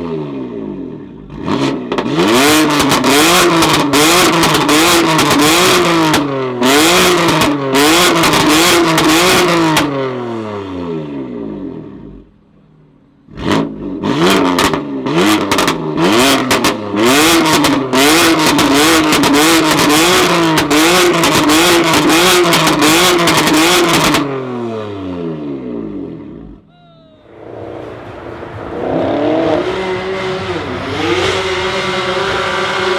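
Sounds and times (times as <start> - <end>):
sports car engine revving: 0.0 - 12.4, 13.2 - 26.7, 27.3 - 32.9
exhaust crackles and pops: 14.3 - 24.3.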